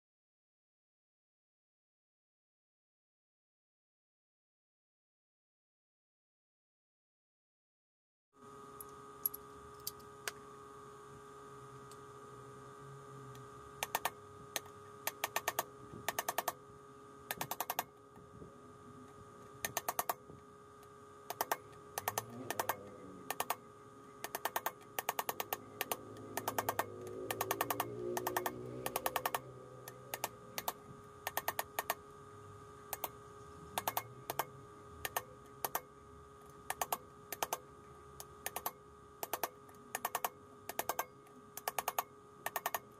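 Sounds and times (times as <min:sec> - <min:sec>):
faint steady hum: 0:08.4 - 0:42.9
ratchet wrench clicking: 0:13.8 - 0:16.6, 0:17.3 - 0:17.9, 0:19.6 - 0:20.2, 0:21.3 - 0:23.6, 0:24.2 - 0:32.0, 0:33.8 - 0:35.8.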